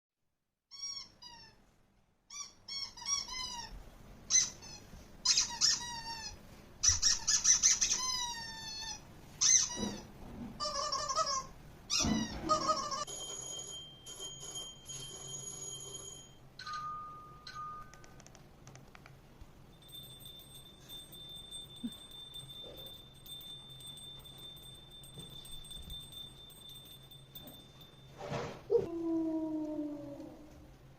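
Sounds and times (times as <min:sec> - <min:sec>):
dog whining: 0:02.3 - 0:13.1, 0:28.6 - 0:30.7.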